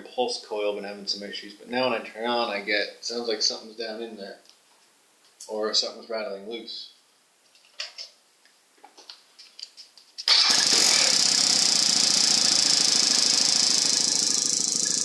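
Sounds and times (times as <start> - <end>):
motorcycle engine rattling: 10.4 - 15.0.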